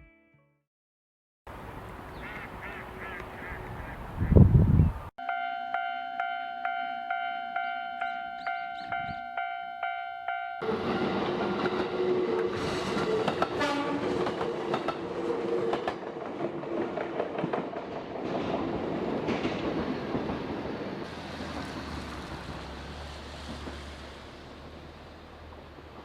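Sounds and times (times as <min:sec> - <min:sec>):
train horn tones: 0:10.3 - 0:14.4
train rumbling and clattering: 0:10.6 - 0:26.0.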